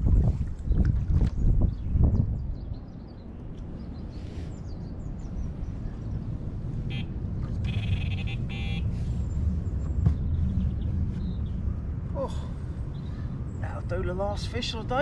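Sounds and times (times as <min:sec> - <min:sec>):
wind rumbling on microphone: 0:00.0 - 0:15.0.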